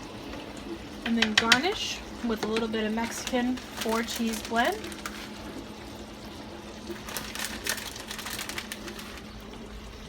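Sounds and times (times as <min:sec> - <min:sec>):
faint steady hum: 0:00.0 - 0:10.0
shredded cheese sprinkling: 0:07.0 - 0:09.3.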